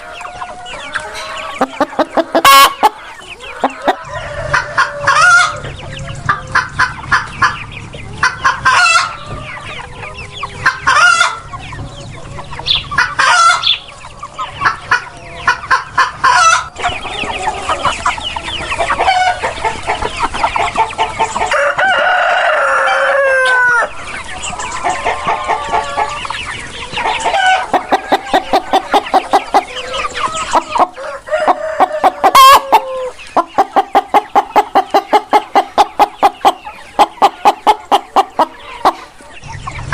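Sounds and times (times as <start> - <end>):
rooster crowing: 0.0 - 5.6, 21.5 - 24.0, 27.4 - 33.2
chickens clucking: 0.0 - 39.9.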